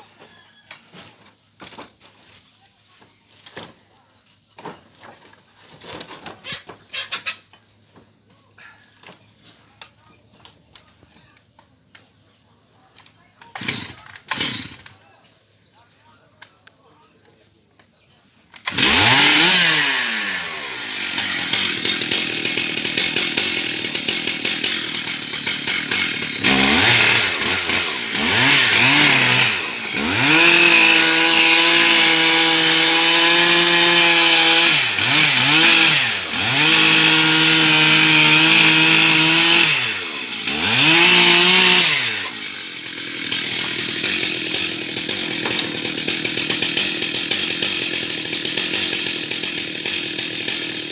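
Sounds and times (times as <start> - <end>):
chainsaw revving: 13.5 - 14.9, 18.5 - 50.9.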